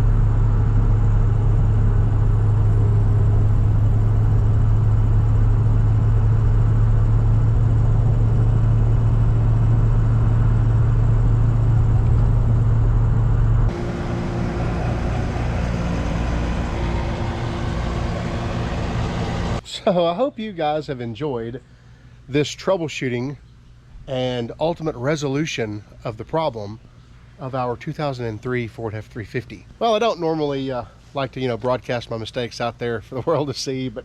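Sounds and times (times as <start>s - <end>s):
diesel engine running: 0.0s - 19.6s
quieter engine sound: 0.0s - 21.6s.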